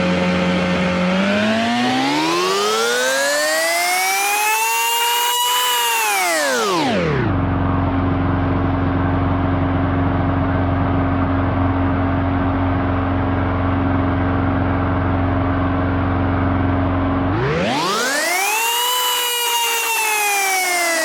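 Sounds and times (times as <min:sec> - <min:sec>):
scroll saw running: 0:00.0 - 0:07.3, 0:17.3 - 0:21.0.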